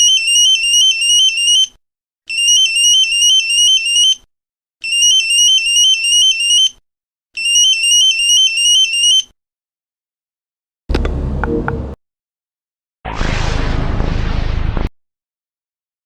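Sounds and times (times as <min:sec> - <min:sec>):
phone alarm beeping melody: 0:07.4 - 0:09.3.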